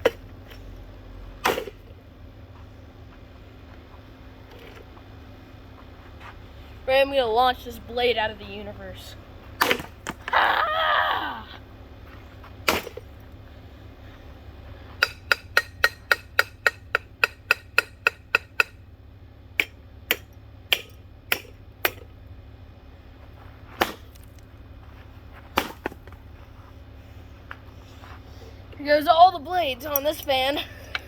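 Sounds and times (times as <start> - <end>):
ceiling fan being smashed: 12.6 - 13.0.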